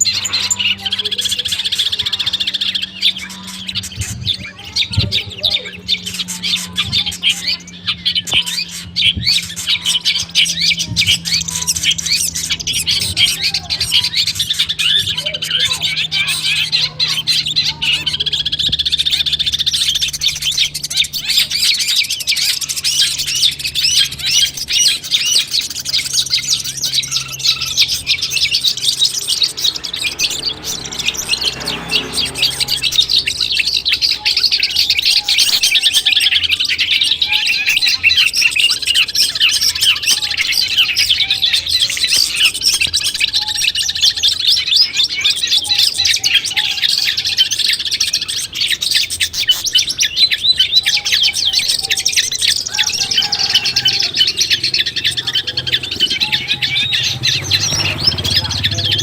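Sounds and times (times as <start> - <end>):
bird singing high trills: 0.0 - 59.0.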